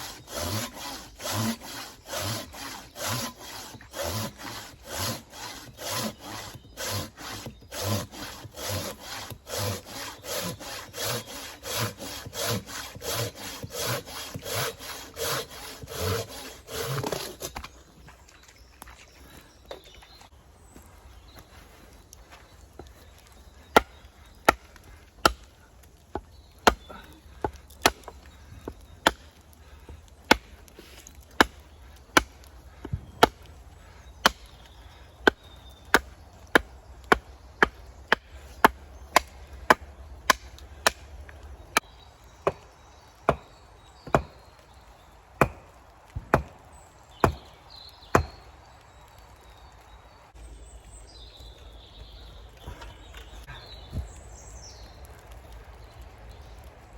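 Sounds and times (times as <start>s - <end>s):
axe chopping into a log: 44.1s - 44.4s, 45.4s - 46.5s, 47.2s - 47.5s, 48.1s - 48.4s.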